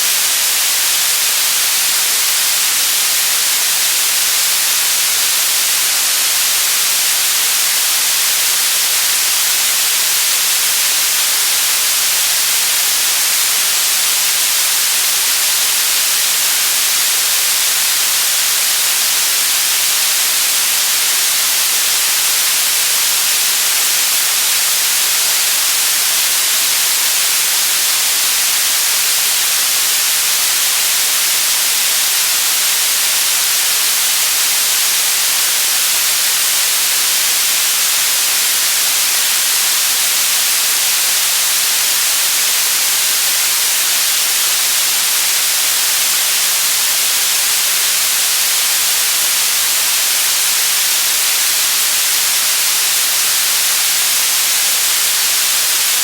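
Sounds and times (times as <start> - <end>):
electronic white noise hiss: 0.0 - 56.0.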